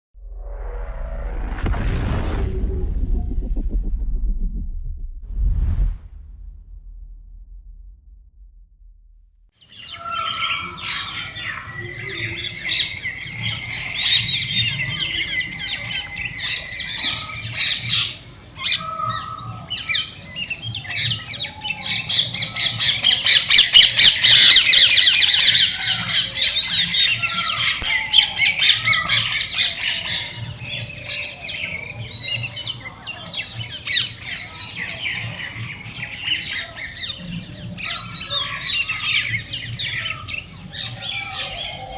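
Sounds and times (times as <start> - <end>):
chorus of birds calling: 9.6 - 41.9
rapidly repeated bird calls: 9.6 - 41.9.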